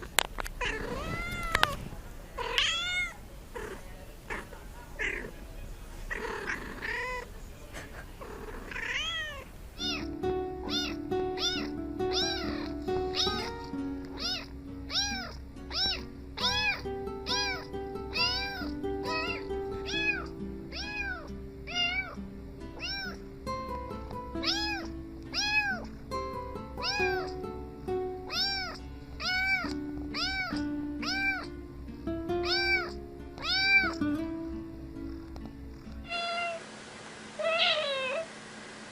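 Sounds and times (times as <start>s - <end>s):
cat meowing: 0.6s - 1.8s, 2.4s - 5.3s, 6.1s - 7.3s, 8.4s - 13.5s, 14.1s - 22.2s, 22.8s - 23.2s, 24.4s - 25.9s, 26.8s - 27.4s, 28.3s - 31.5s, 32.4s - 34.0s, 36.0s - 36.6s, 37.4s - 38.3s
background music: 9.8s - 35.9s.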